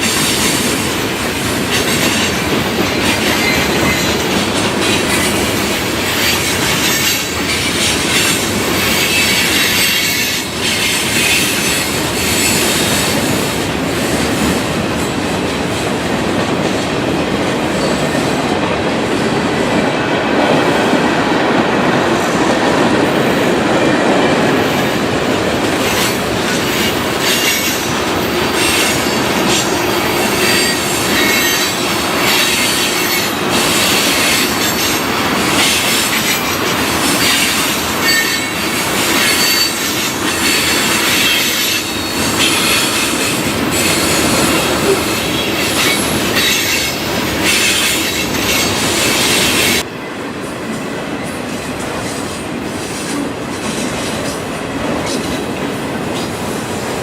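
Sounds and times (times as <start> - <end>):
train wheel squeal and clatter: 0.0 - 15.2, 25.7 - 49.9, 50.7 - 55.6
steel wheels rumbling on rail: 0.0 - 57.0.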